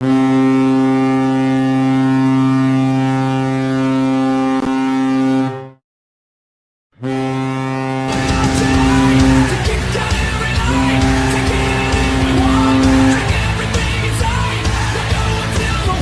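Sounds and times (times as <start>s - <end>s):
deep goal horn blast: 0.0s - 5.8s, 7.0s - 16.0s
noisy crowd din: 8.2s - 16.0s.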